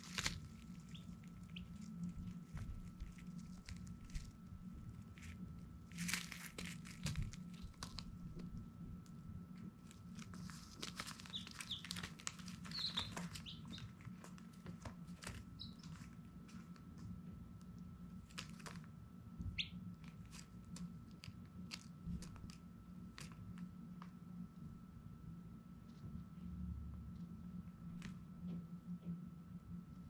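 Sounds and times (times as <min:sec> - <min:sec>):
baby chicks peeping: 0:00.0 - 0:04.3, 0:09.9 - 0:16.6, 0:19.4 - 0:20.1
low steady hum: 0:00.0 - 0:30.0.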